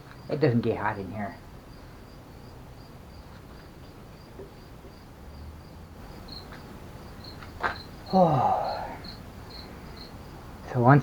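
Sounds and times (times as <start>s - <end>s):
cricket chirping: 0.0s - 11.0s.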